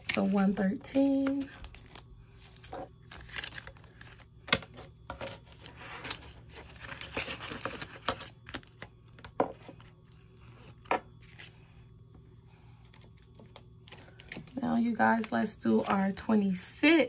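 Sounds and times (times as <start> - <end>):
paper bills rustling: 0.0 - 4.3.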